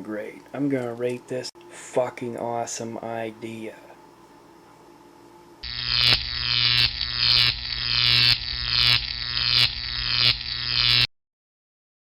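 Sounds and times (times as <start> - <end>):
steady hum: 1.3 - 11.1
pulsing electric buzz: 5.6 - 11.1.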